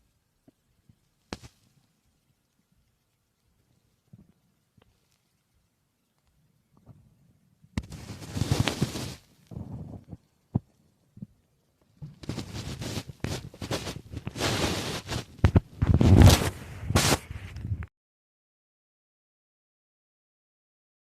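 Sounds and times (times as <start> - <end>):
stomach growling and gurgling: 0.4 - 17.8
rustling: 7.8 - 17.8.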